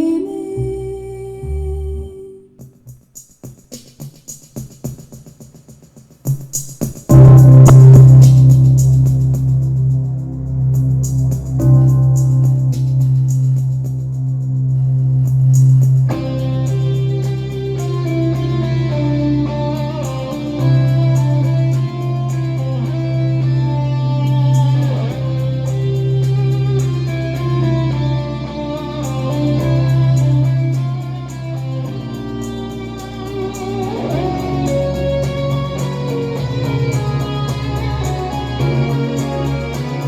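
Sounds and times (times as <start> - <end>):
sustained low bass note: 0.6 - 2.4
instrumental guitar music: 16.1 - 40.0.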